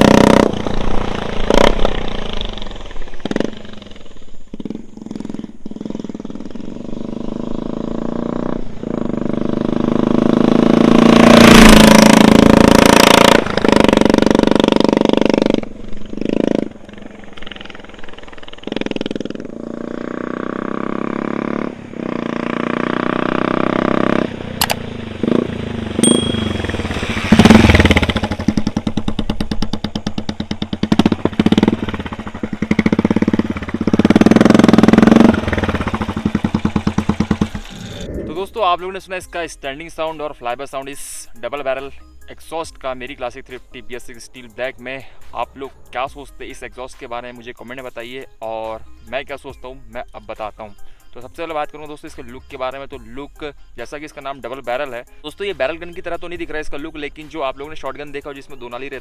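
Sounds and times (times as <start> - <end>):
motorcycle exhaust passing by: 0.0 - 39.3.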